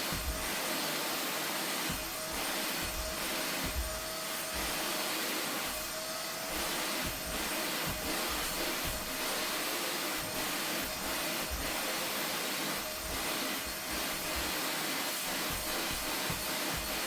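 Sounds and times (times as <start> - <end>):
vacuum cleaner whining: 0.0 - 17.0.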